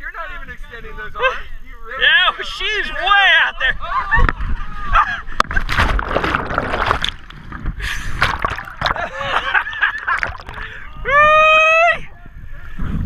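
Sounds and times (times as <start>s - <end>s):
water splashing and sloshing: 5.4s - 11.0s.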